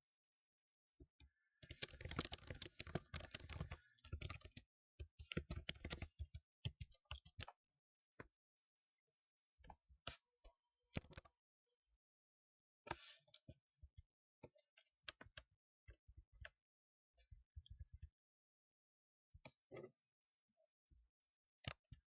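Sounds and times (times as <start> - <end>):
typing on computer keyboard: 1.7 - 7.6.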